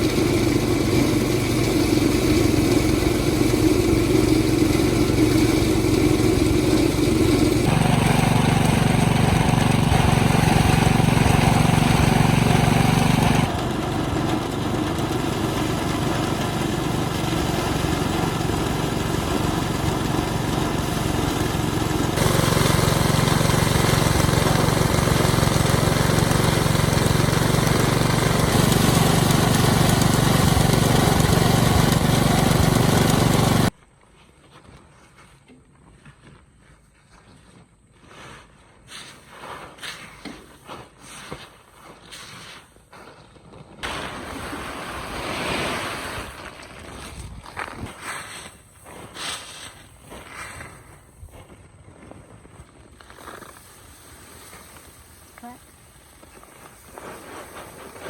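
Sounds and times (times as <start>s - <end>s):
small engine running: 0.0s - 33.7s.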